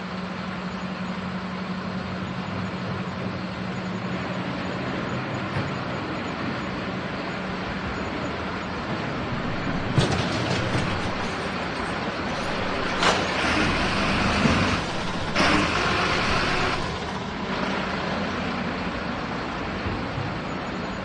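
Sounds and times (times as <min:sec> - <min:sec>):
garbage truck running: 0:00.0 - 0:21.0.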